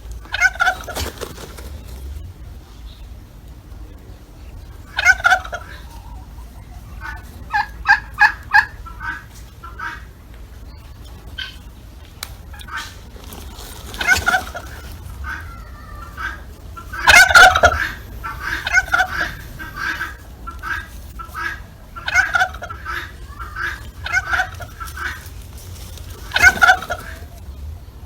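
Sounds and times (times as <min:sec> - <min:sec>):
turkey gobbling: 0:00.0 - 0:28.0.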